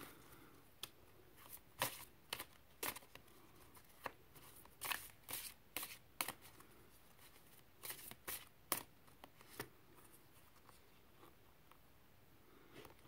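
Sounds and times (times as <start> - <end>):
cards being shuffled: 3.9 - 6.6, 7.2 - 9.7.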